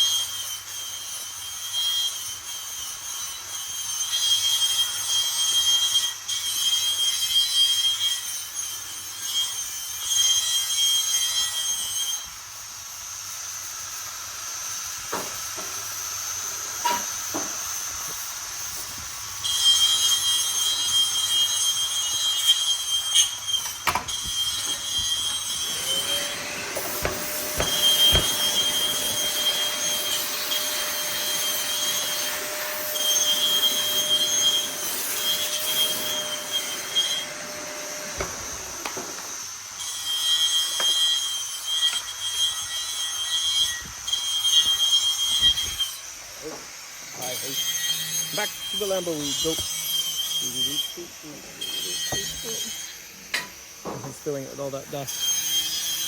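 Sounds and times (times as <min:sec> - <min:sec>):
power tool whining: 0:15.0 - 0:56.0
knocks: 0:26.7 - 0:29.3.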